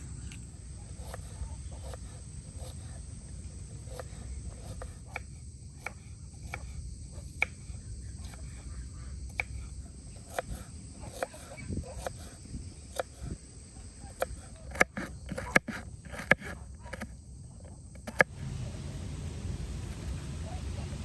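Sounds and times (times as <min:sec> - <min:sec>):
insects chirring: 0:00.0 - 0:21.0
low outdoor rumble: 0:18.2 - 0:21.0.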